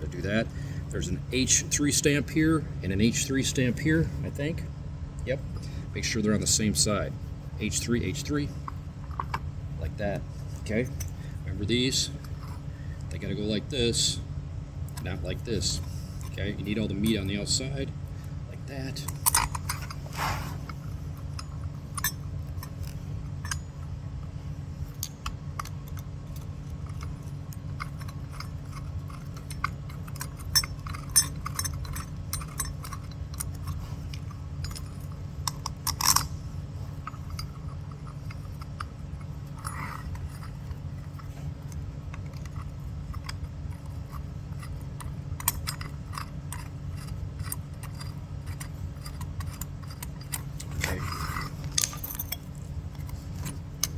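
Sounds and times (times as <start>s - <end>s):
steady low hum: 0.0s - 53.9s
metal parts clinking: 7.7s - 14.2s, 14.9s - 53.9s.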